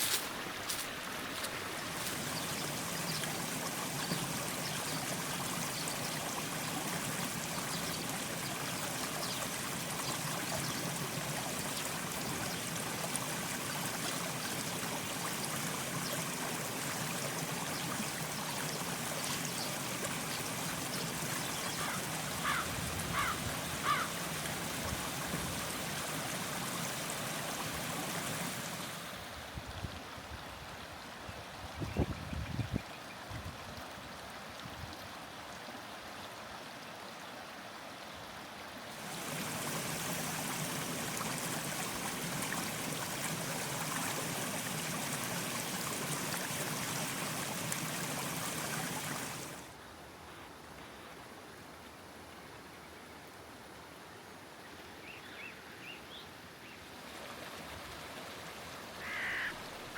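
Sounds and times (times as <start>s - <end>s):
water flowing: 0.0s - 29.6s, 38.8s - 49.8s.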